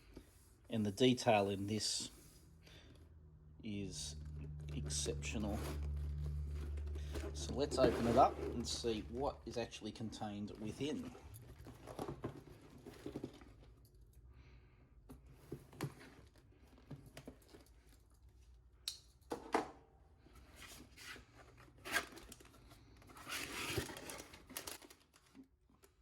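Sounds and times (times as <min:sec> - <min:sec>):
cardboard rustle: 0:05.4 - 0:09.3
cardboard box tearing and scraping: 0:07.0 - 0:09.0, 0:23.2 - 0:24.4.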